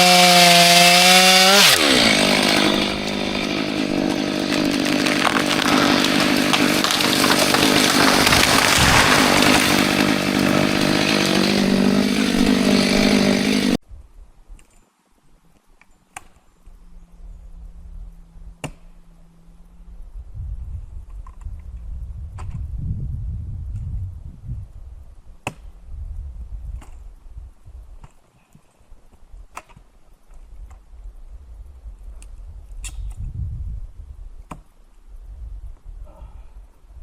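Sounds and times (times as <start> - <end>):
chainsaw cutting wood: 0.0 - 13.8.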